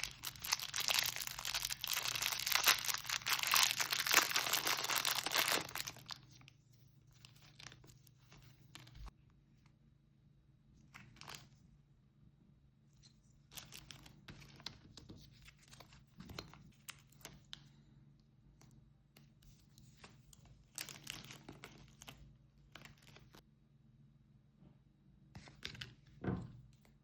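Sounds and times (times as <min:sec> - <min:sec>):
packaging crinkling and tearing: 0:00.0 - 0:06.2, 0:11.2 - 0:11.4, 0:13.5 - 0:14.7, 0:20.8 - 0:22.2, 0:22.8 - 0:23.4.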